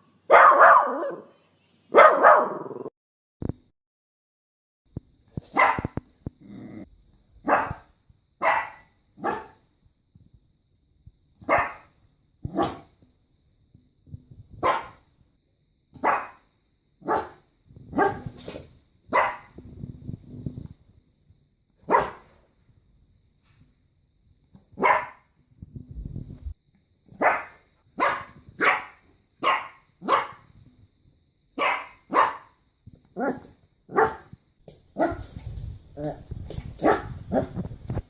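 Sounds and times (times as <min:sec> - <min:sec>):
puppy barking: 0:00.3 - 0:02.9, 0:05.5 - 0:06.0, 0:07.4 - 0:09.6, 0:11.4 - 0:11.9, 0:12.5 - 0:12.9, 0:14.6 - 0:15.0, 0:16.0 - 0:16.4, 0:17.0 - 0:18.4, 0:19.1 - 0:19.6, 0:21.8 - 0:22.4, 0:24.8 - 0:25.3, 0:27.2 - 0:30.5, 0:31.6 - 0:32.6, 0:33.2 - 0:34.3, 0:35.0 - 0:35.2, 0:36.8 - 0:37.6.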